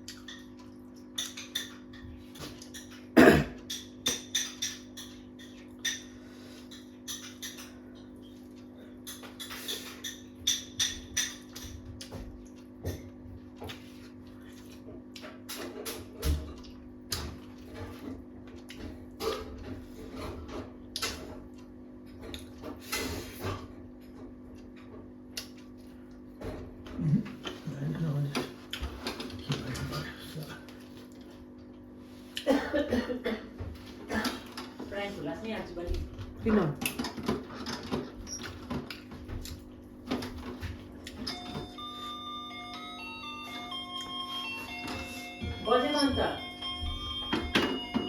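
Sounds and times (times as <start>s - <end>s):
cutlery clinking on a plate: 3.6s - 7.8s, 9.1s - 11.8s.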